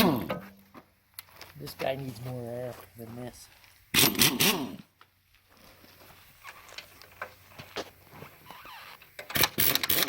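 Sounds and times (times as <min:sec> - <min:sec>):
pneumatic impact wrench hammering: 0:03.9 - 0:04.8, 0:09.2 - 0:10.0.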